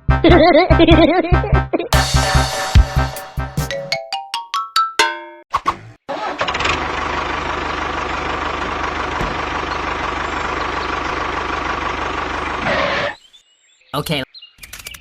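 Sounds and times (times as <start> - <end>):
engine starting and running: 6.1 - 13.2.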